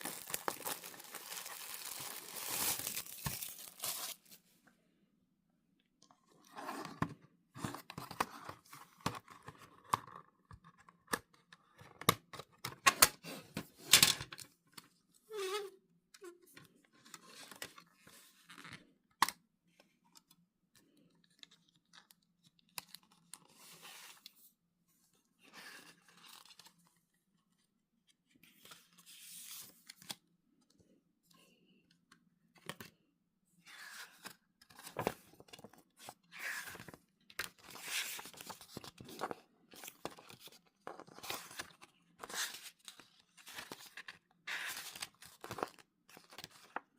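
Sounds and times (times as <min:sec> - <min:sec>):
plastic packaging tearing and crinkling: 0:00.0 - 0:04.3.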